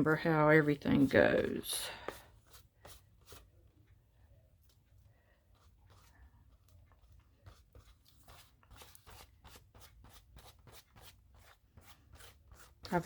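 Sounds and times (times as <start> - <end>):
scratchy strokes on paper: 5.4 - 13.0.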